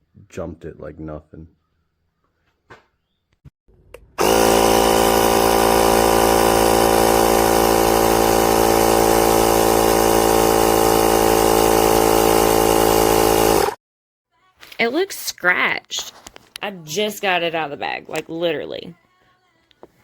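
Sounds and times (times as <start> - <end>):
air compressor buzzing: 4.2 - 13.8.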